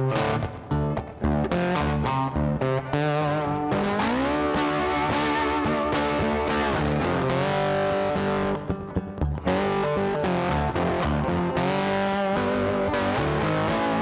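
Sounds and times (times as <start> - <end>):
guitar background music: 0.0 - 14.0.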